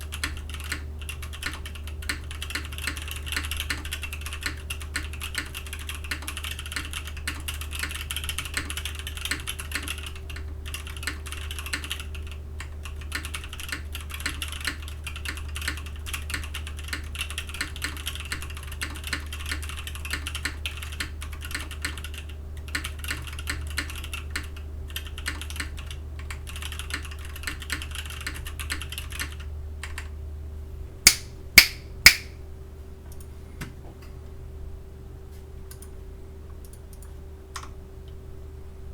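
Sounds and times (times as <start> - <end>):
typing on mechanical keyboard: 0.0 - 30.1
sharp loud clicks: 31.1 - 32.4.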